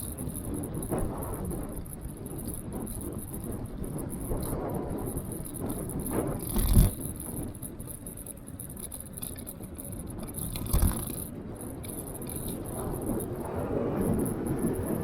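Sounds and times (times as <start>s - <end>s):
scooter tyres on wet road: 5.2s - 15.0s.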